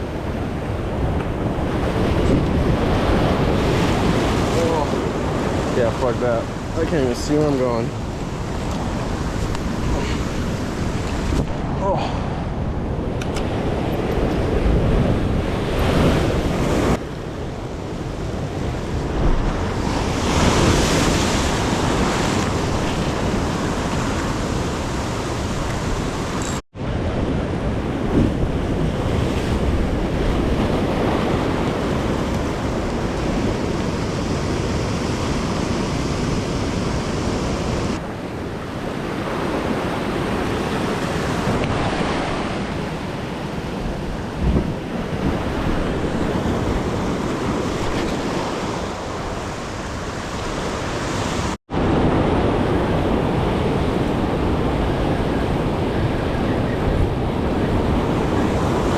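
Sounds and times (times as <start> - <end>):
surf breaking over rocks: 0.0 - 12.6
wind buffeting microphone: 0.0 - 58.9.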